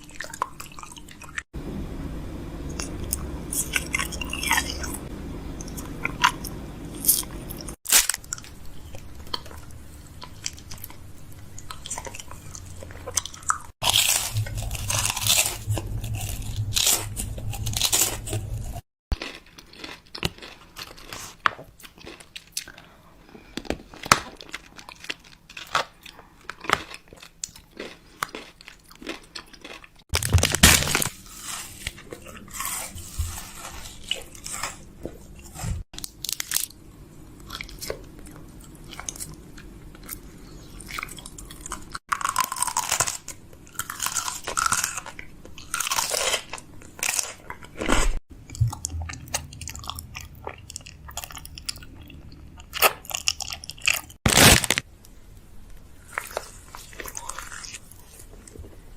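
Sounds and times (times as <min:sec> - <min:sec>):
person chewing crunchy snacks: 0:02.8 - 0:54.9, 0:56.0 - 0:58.8.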